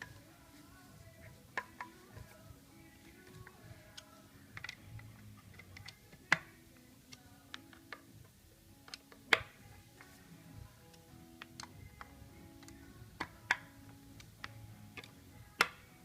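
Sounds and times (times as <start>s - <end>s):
faint background music: 0.0s - 16.0s
tools and parts clicking: 3.2s - 8.1s, 8.8s - 10.2s, 10.9s - 15.8s.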